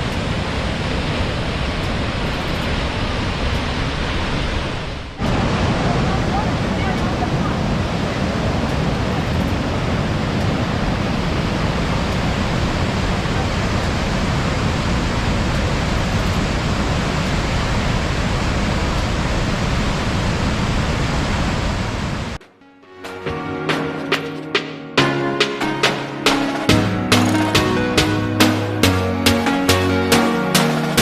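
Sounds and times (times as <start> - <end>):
waterfall rushing: 0.0 - 22.4, 25.0 - 31.0
music with percussion: 23.0 - 31.0.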